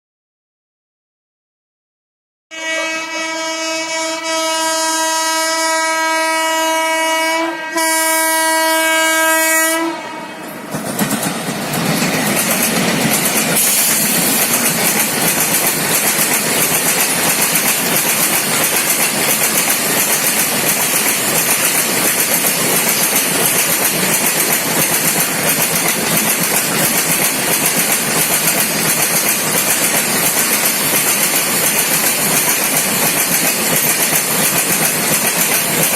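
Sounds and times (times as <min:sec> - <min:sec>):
locomotive horn blasts: 0:02.5 - 0:10.6
train wheels clattering over rail joints: 0:10.6 - 0:35.9.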